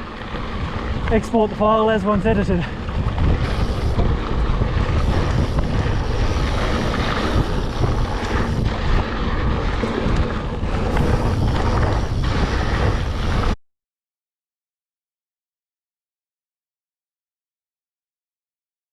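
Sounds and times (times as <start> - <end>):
bike rolling on dirt trail: 0.0 - 13.6
wind rushing over microphone: 0.0 - 13.6.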